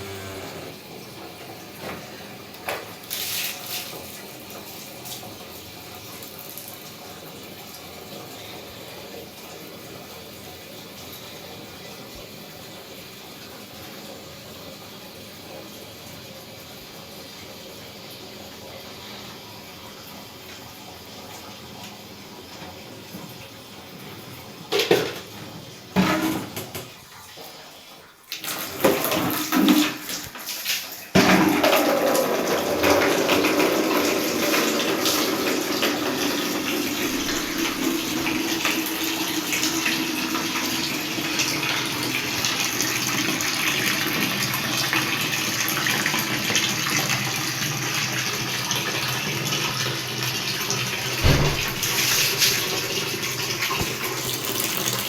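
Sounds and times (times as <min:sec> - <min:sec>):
water gushing into a container: 0:00.0 - 0:08.9, 0:27.5 - 0:55.0.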